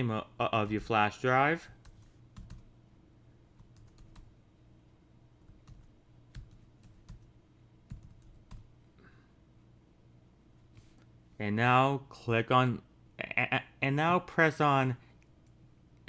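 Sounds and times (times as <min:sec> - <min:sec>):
low steady hum: 0:00.0 - 0:16.0
keystrokes on computer keyboard: 0:01.7 - 0:02.7, 0:03.6 - 0:04.3, 0:05.4 - 0:07.3, 0:07.9 - 0:08.7.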